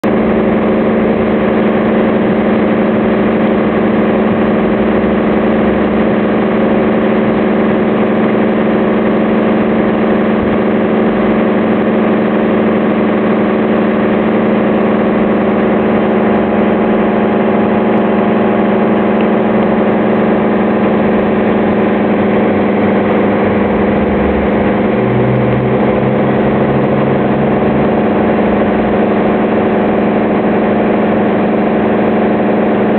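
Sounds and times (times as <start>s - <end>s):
deeper hum: 0.0s - 32.9s
extractor fan droning: 0.0s - 32.9s.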